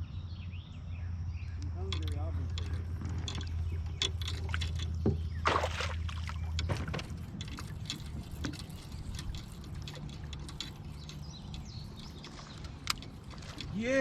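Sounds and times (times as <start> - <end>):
low steady hum: 0.0 - 14.0
water splashing and dribbling: 1.8 - 14.0
small ticks: 6.4 - 13.8.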